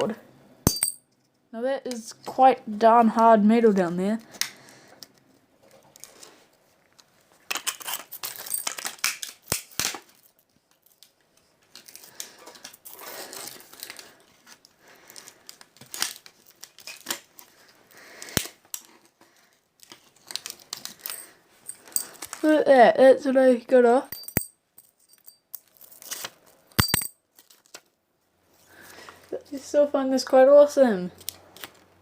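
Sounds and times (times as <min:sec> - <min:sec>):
phone parts scraped apart: 0:07.5 - 0:09.1.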